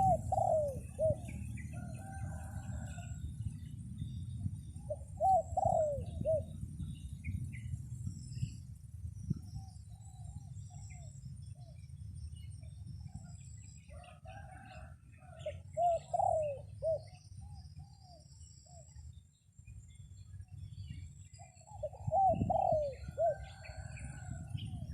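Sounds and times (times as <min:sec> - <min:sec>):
dove cooing: 0:00.0 - 0:03.1, 0:04.8 - 0:06.6, 0:14.6 - 0:17.2, 0:21.7 - 0:24.8
wind rumble on microphone: 0:00.0 - 0:24.9.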